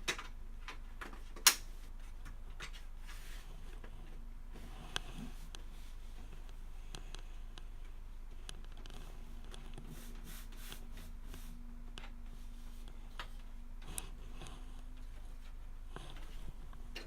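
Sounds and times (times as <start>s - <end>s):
hands handling computer parts: 0.0s - 4.2s
low electrical hum: 0.0s - 17.0s.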